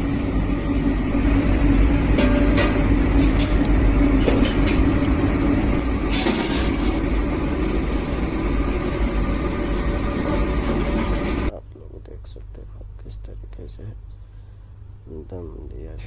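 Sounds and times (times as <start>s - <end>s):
low rumble with hum: 0.0s - 16.0s.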